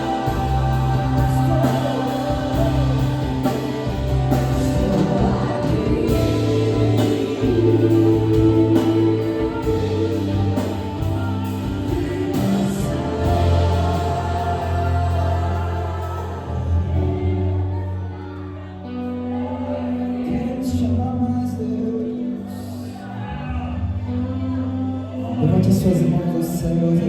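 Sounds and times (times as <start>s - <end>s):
held low chords: 0.0s - 19.3s
person singing: 0.0s - 23.2s.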